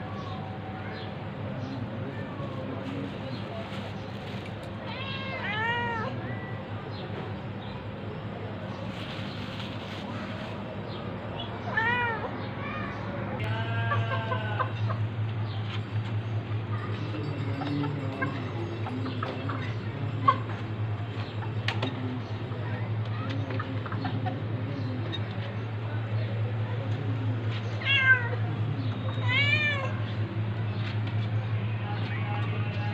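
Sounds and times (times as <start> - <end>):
steady low hum: 0.0 - 32.9
cat meowing: 4.9 - 6.1, 11.7 - 12.3, 29.2 - 30.0.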